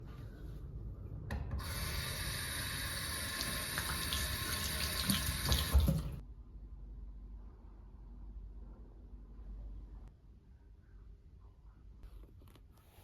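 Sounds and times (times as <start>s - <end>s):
tap water running into sink: 1.6s - 6.2s
knocks under water stream: 5.2s - 6.2s.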